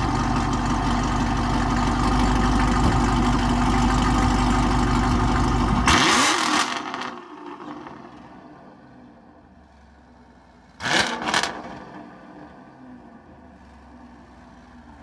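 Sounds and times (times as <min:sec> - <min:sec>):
car engine idling: 0:00.0 - 0:05.9.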